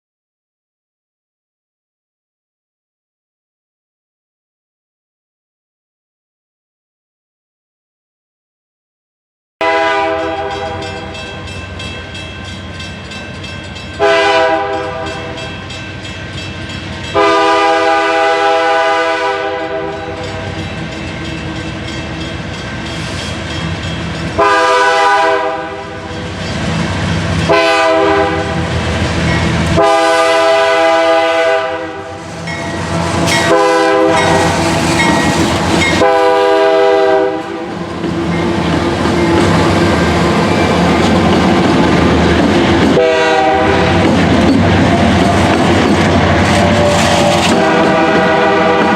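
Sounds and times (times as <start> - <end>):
locomotive air horn blasts: 9.6 - 11.2, 14.0 - 15.5, 17.1 - 20.6, 24.4 - 26.1, 27.5 - 28.7, 29.7 - 32.2, 33.2 - 35.0, 35.8 - 37.8, 42.9 - 44.0, 46.8 - 48.9
locomotives rumbling: 32.1 - 36.6, 37.4 - 48.9.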